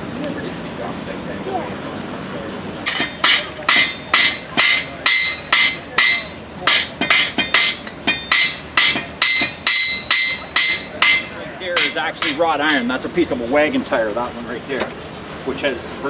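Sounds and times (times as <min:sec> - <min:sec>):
hammer striking iron on anvil: 0:02.9 - 0:13.0.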